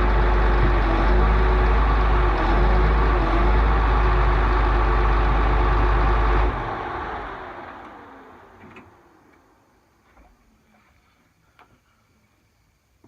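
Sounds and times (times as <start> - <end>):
heavy vehicle engine idling: 0.0 - 9.7.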